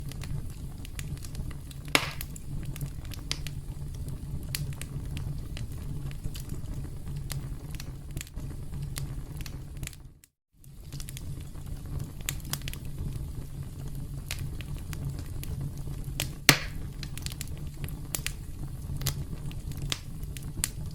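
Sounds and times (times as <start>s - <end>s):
campfire crackling: 0.0s - 20.9s.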